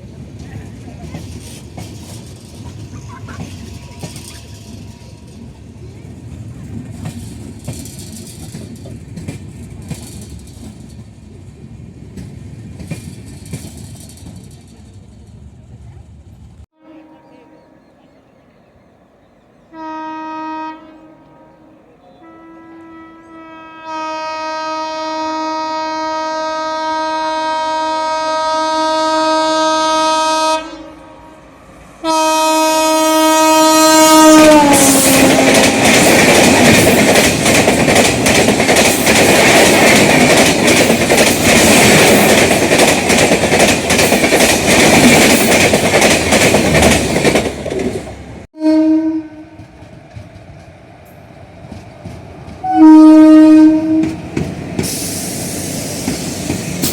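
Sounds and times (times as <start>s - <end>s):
train coaches clattering over rails: 0.0s - 16.2s, 32.1s - 48.5s, 49.5s - 56.9s
train horn blasts: 16.7s - 18.1s, 19.7s - 36.1s, 48.6s - 49.7s, 52.6s - 54.2s.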